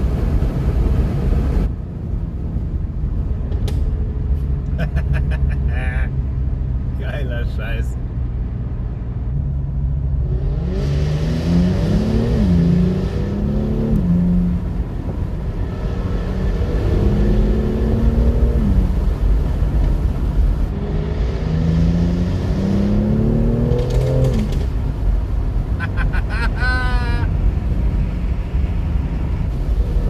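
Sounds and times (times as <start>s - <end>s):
car engine accelerating hard: 10.0s - 30.0s.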